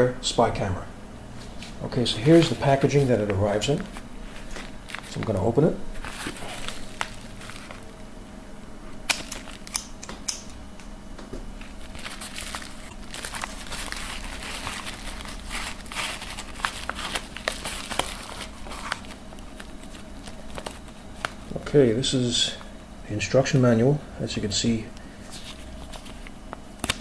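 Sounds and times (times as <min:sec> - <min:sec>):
packaging crinkling: 0:03.2 - 0:08.1, 0:09.1 - 0:10.6, 0:11.6 - 0:21.6, 0:25.3 - 0:27.0.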